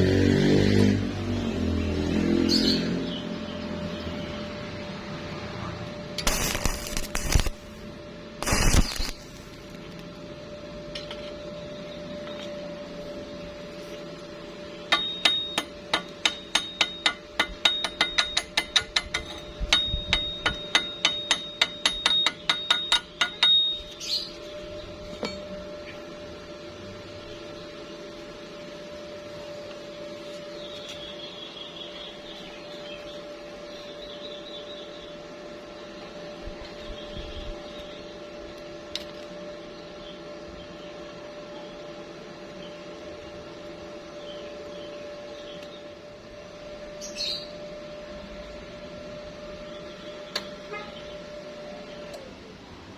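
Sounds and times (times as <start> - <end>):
steady hum: 3.0 - 52.9
hammer striking steel: 14.9 - 24.0.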